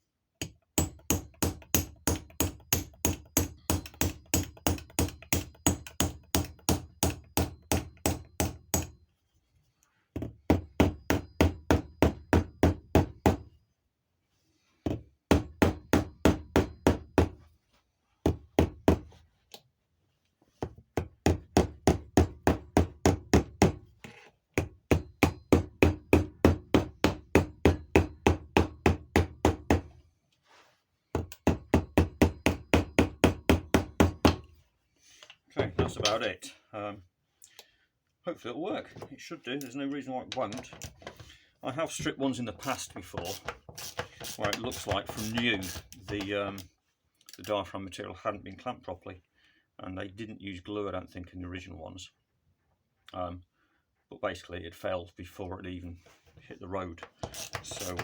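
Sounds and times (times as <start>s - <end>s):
small hammer tapping on metal: 0.4s - 9.0s.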